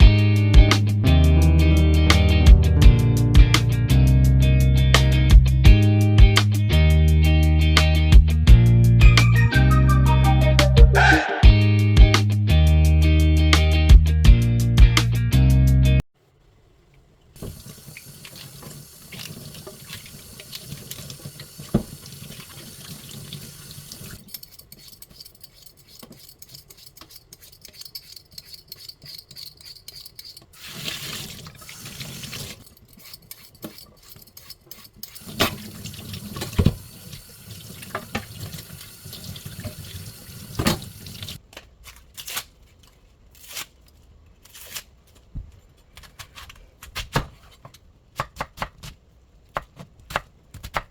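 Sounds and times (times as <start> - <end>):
tap water running into sink: 17.4 - 24.2, 30.6 - 32.6, 35.2 - 41.4.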